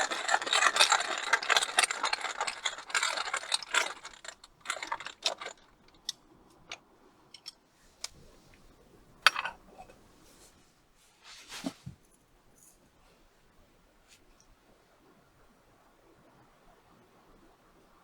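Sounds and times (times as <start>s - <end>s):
small hard objects clicking: 0.0s - 6.2s.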